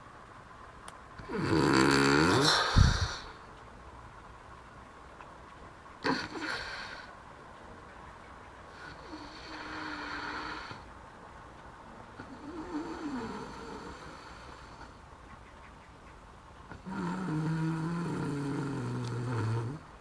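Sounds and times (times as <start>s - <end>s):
woman snoring: 1.2s - 3.4s, 8.8s - 10.8s, 12.3s - 14.8s, 16.7s - 19.8s
woman snorting: 1.2s - 3.4s.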